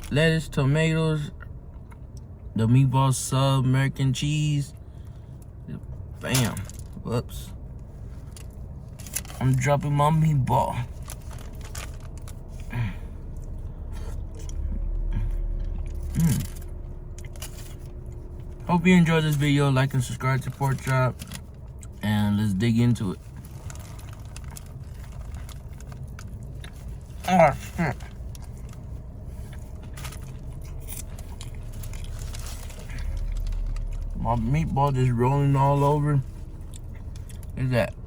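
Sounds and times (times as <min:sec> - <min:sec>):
low steady rumble: 0:00.0 - 0:38.0
low hum: 0:04.7 - 0:38.0
chewing and soft scraping: 0:10.9 - 0:18.7, 0:23.1 - 0:34.2, 0:36.2 - 0:37.6.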